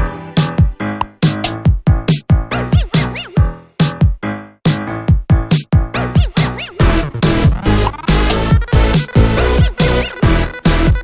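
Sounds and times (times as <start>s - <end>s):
heavy kick drum beat: 0.4s - 4.2s
swooping synth melody: 6.5s - 11.0s.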